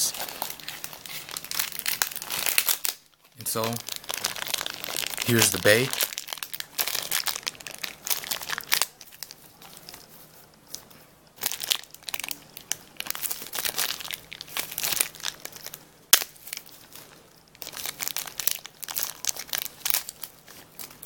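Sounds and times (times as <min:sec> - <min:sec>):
packaging wrapper crinkling: 0:00.0 - 0:21.0.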